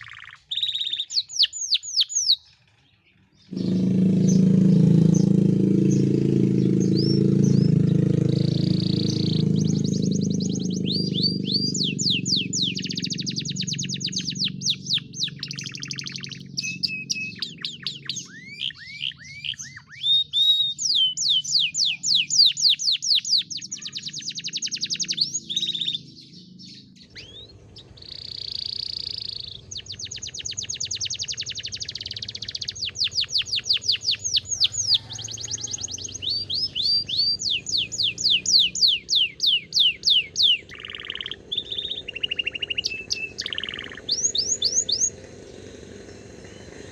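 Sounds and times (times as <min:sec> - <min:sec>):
canary singing trills: 0:00.0 - 0:46.9.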